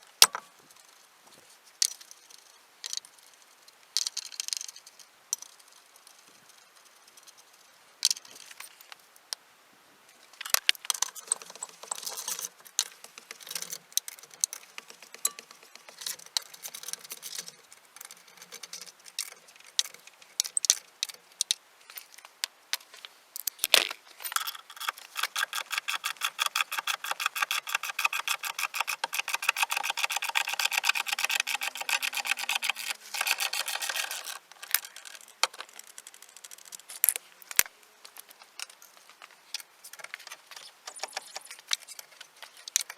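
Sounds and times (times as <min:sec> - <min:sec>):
ratchet wrench clicking: 0:24.4 - 0:34.4.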